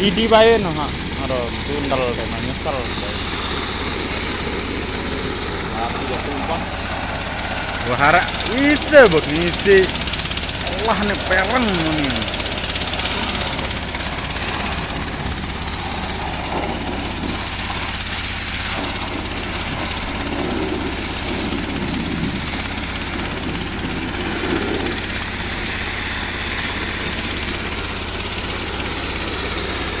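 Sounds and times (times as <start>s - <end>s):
pump engine running steadily: 0.0s - 30.0s.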